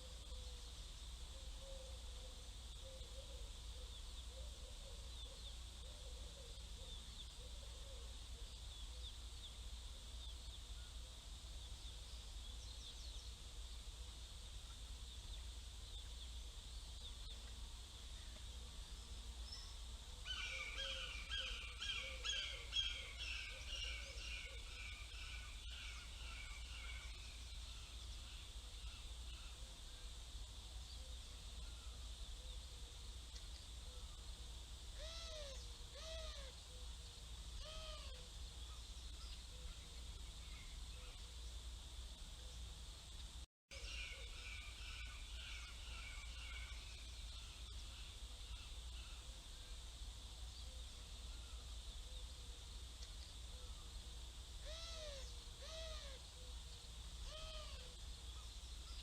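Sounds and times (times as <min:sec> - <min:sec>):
steady low hum: 0:00.0 - 0:59.0
young hawk calling: 0:54.6 - 0:56.2.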